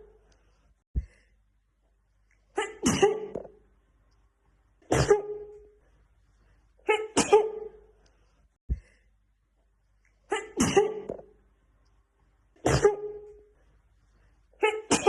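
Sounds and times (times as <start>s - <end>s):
woman sneezing: 2.6s - 3.4s, 4.8s - 5.5s, 6.9s - 7.8s, 10.3s - 11.2s, 12.6s - 13.3s, 14.6s - 15.0s.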